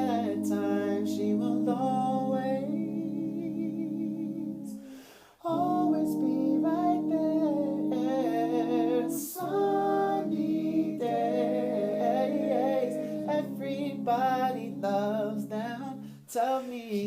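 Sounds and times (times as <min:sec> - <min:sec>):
a cappella harmony singing: 0:00.0 - 0:17.0
quick breath: 0:04.8 - 0:05.4.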